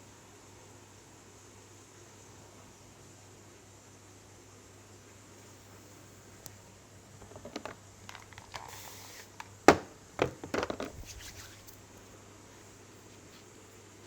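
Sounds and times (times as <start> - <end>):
hands rubbing skin: 10.9 - 11.8, 12.6 - 13.9.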